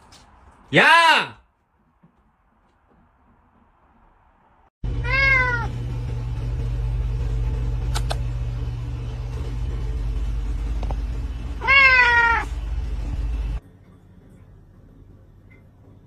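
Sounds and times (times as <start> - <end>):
steady low hum: 4.8 - 16.0
cat meowing: 5.0 - 5.7, 11.6 - 12.5.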